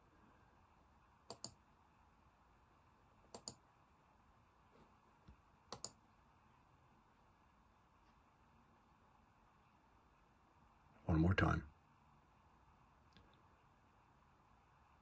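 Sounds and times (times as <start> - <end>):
computer mouse clicking: 1.3 - 1.6, 3.3 - 3.6, 5.3 - 6.0.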